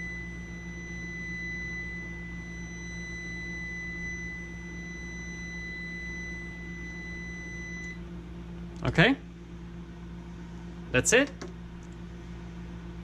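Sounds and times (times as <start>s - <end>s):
high-pitched multimeter beep tone: 0.0s - 8.0s
low hum: 0.0s - 13.0s.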